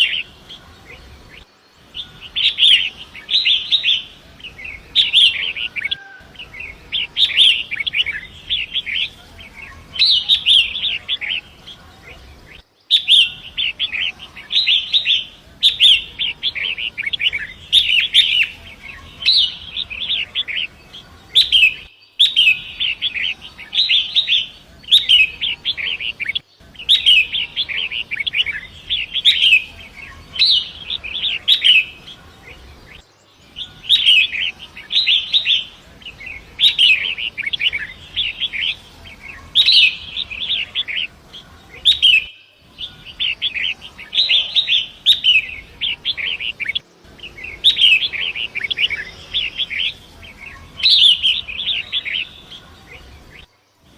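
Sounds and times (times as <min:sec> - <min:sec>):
bird singing scratchy chatter: 0:00.0 - 0:53.9.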